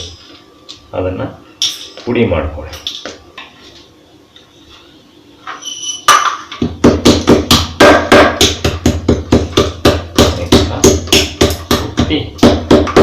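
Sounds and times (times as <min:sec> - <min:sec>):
pestle pounding in a mortar: 0:06.6 - 0:13.0.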